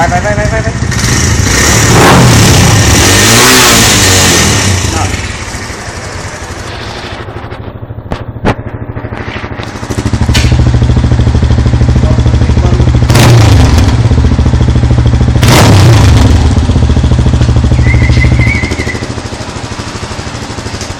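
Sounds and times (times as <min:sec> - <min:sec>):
motorcycle engine revving: 0:00.0 - 0:20.9.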